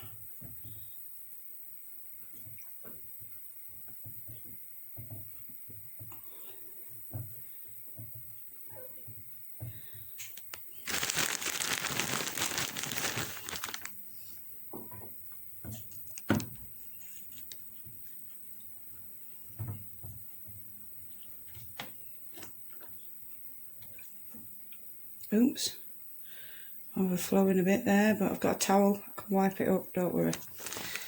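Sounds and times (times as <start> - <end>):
fibre crinkling and rustling: 10.2 - 14.0, 30.2 - 31.0.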